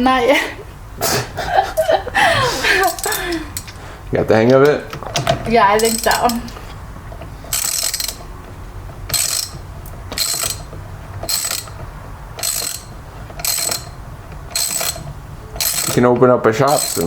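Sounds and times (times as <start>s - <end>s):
ratchet wrench clicking: 2.8s - 3.8s, 4.4s - 6.6s, 7.5s - 8.4s, 9.0s - 17.0s.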